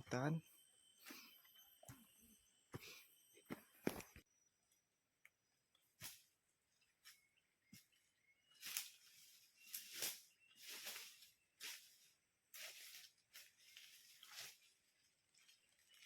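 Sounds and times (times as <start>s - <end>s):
leaves and twigs rustling: 7.0s - 16.0s.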